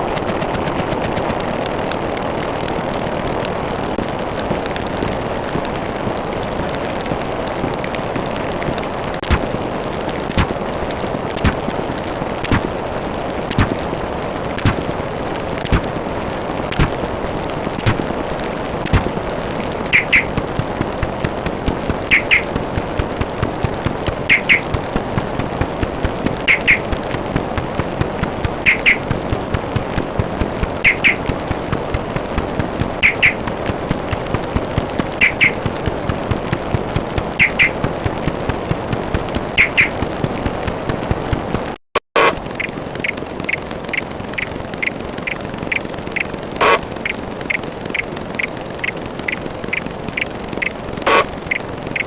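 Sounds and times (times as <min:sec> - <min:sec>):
sharp cracks: 0:00.0 - 0:52.0
steady rushing noise: 0:00.0 - 0:52.0
bird chirps: 0:19.9 - 0:20.3, 0:22.1 - 0:22.5, 0:24.3 - 0:24.7, 0:26.5 - 0:26.8, 0:28.7 - 0:29.0, 0:30.8 - 0:31.2, 0:33.0 - 0:33.4, 0:35.2 - 0:35.6, 0:37.4 - 0:37.8, 0:39.6 - 0:40.0, 0:46.6 - 0:47.2.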